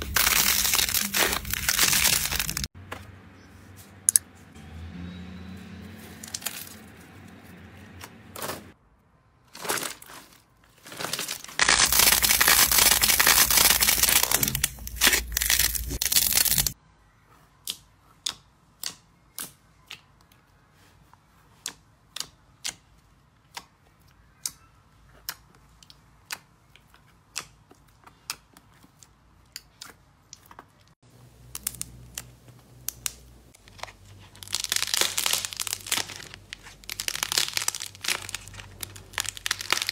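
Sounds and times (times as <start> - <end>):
slime crackling: 0.0 - 2.7, 9.6 - 16.8, 31.4 - 39.9
slime squishing: 0.0 - 2.7, 10.9 - 16.8, 20.8 - 39.9.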